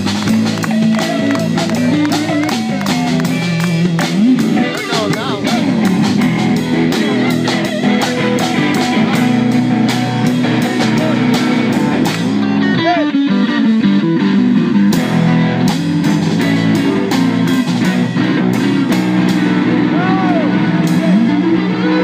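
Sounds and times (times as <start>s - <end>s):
drum kit beat: 0.0s - 22.0s
electric guitar: 0.0s - 22.0s.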